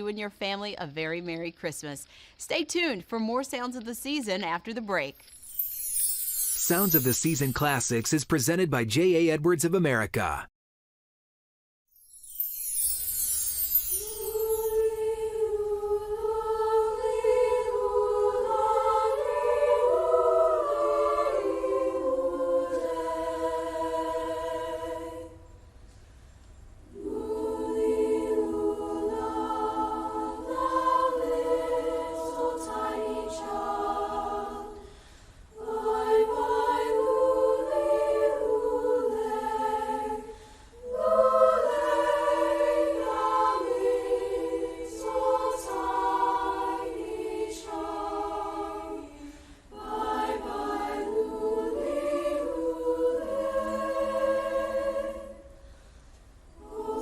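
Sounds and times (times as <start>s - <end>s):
choir singing a cappella: 6.6s - 7.7s, 13.0s - 25.8s, 26.9s - 55.9s, 56.5s - 57.0s.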